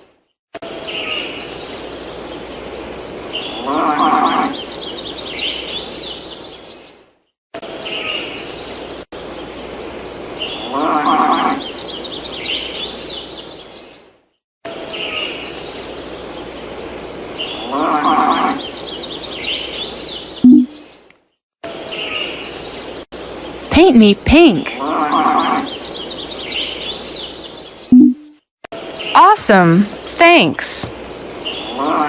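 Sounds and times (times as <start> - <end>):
low animal call: 3.5 - 4.7, 10.6 - 11.7, 17.6 - 18.7, 24.8 - 25.8, 31.6 - 32.0.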